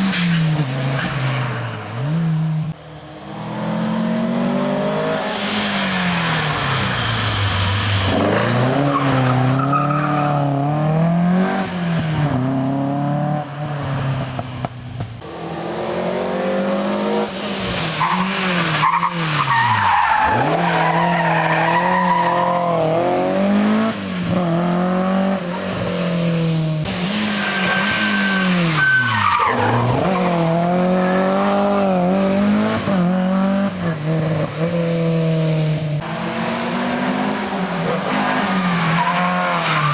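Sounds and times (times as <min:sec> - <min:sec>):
rally car engine revving: 0:00.0 - 0:13.7, 0:14.6 - 0:39.9
tyre squeal: 0:27.3 - 0:30.6.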